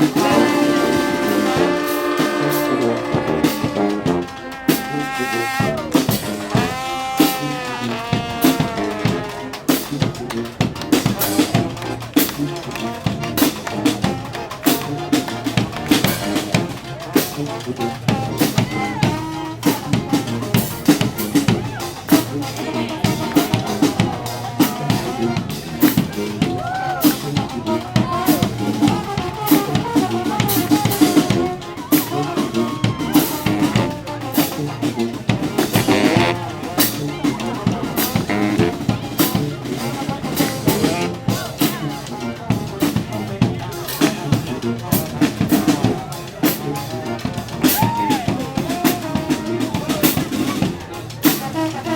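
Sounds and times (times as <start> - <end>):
brass horns: 0.0 - 51.9
snare and bass drums: 0.0 - 51.9
street band playing: 0.0 - 51.9.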